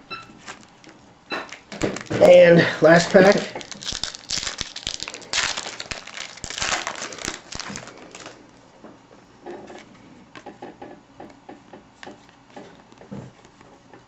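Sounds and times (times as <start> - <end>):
wrapper crinkling and tearing: 0.4 - 8.5
cards being shuffled: 0.4 - 8.6.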